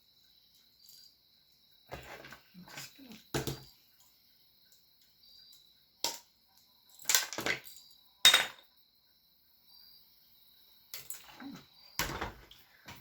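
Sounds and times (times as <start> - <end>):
small hard objects clicking and clattering: 5.0 - 8.6.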